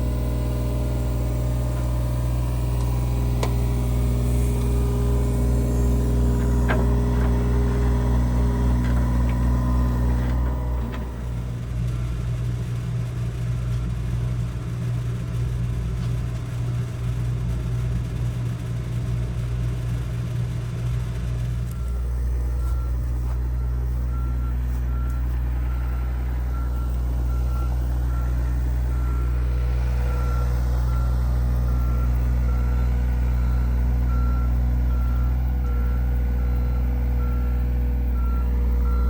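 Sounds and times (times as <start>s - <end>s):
construction machine engine running: 0.0s - 39.0s
back-up alarm beeping: 21.8s - 39.0s.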